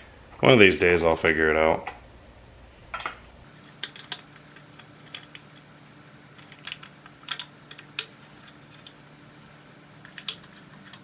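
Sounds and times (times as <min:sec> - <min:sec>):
faint steady hum: 0:03.4 - 0:11.0
clicks of small metal parts: 0:03.5 - 0:11.0.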